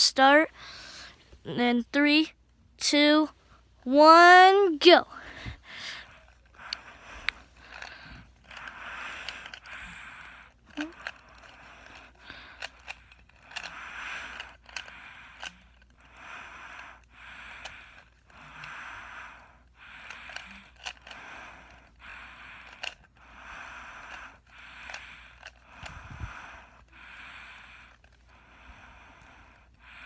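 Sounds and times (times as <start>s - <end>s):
puzzle cube plastic clicking: 4.9s - 26.0s.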